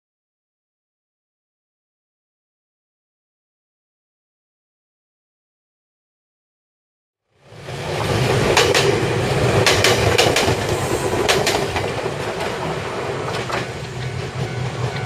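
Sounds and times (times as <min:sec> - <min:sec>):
electric train rumbling past: 0:07.3 - 0:15.0
wheels clacking over rail joints: 0:07.6 - 0:15.0.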